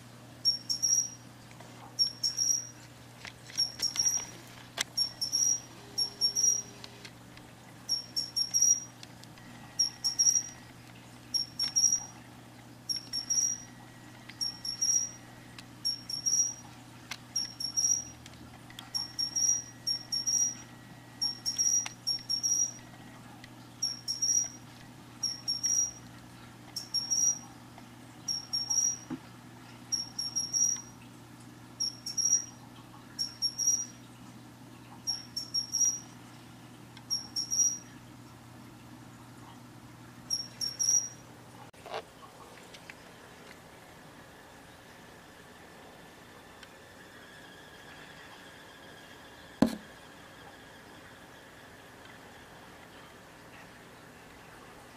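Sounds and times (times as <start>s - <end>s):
cricket chirping: 0.4s - 1.2s, 2.0s - 2.7s, 5.0s - 6.7s, 7.9s - 8.9s, 9.8s - 10.6s, 11.4s - 12.1s, 12.9s - 13.7s, 14.4s - 15.2s, 15.8s - 16.6s, 17.4s - 18.1s, 19.0s - 20.6s, 21.2s - 22.8s, 23.8s - 24.6s, 25.2s - 26.0s, 26.8s - 27.4s, 28.3s - 29.0s, 29.9s - 30.9s, 31.8s - 32.5s, 33.2s - 33.9s, 35.1s - 36.0s, 37.1s - 37.8s, 40.3s - 41.1s
faint cricket trill: 0.4s - 1.2s, 2.0s - 2.7s, 3.6s - 4.3s, 5.0s - 6.8s, 7.9s - 8.9s, 9.7s - 10.6s, 11.3s - 12.2s, 12.9s - 13.8s, 14.4s - 15.2s, 15.8s - 16.6s, 17.4s - 18.2s, 18.9s - 22.8s, 23.8s - 24.6s, 25.2s - 26.0s, 26.8s - 27.5s, 28.3s - 29.1s, 29.9s - 31.0s, 31.8s - 32.6s, 33.2s - 34.0s, 35.1s - 36.2s, 37.1s - 37.9s, 40.3s - 41.2s.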